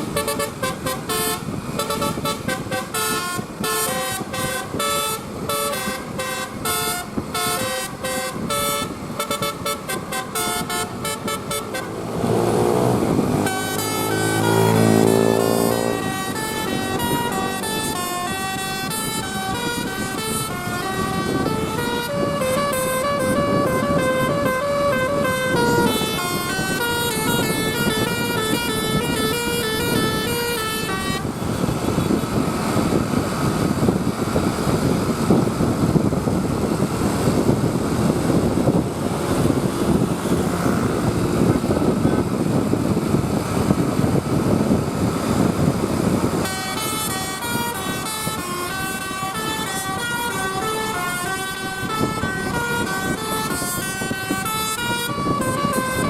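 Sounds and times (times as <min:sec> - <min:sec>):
bus horn playing a melody: 0:00.0 - 0:32.9, 0:46.3 - 0:56.0.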